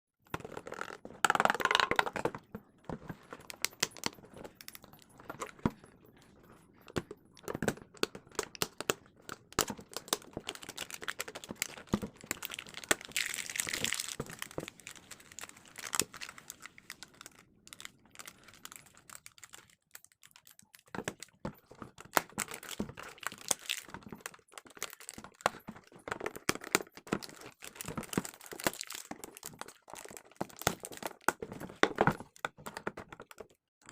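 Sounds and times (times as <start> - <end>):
chips packet crinkling: 9.7 - 21.1, 22.2 - 25.2, 27.2 - 31.3.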